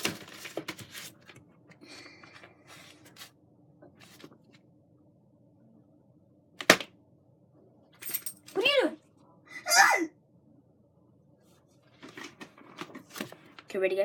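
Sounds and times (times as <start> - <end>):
rustling handling noises: 0.0 - 4.7, 11.4 - 13.7.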